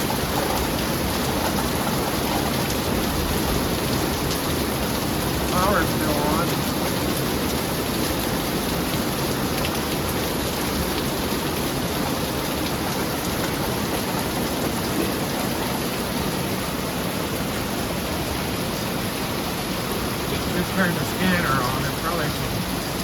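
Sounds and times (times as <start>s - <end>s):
heavy rain pouring: 0.0s - 23.0s.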